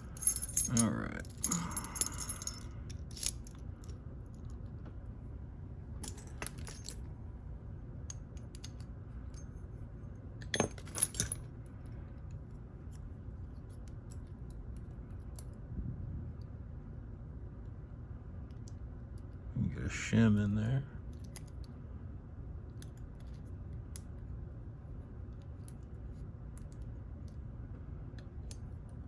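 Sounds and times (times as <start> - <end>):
lock parts clinking and clicking: 0.0 - 4.8, 6.0 - 7.2, 8.0 - 9.7, 10.4 - 15.6, 21.1 - 21.7.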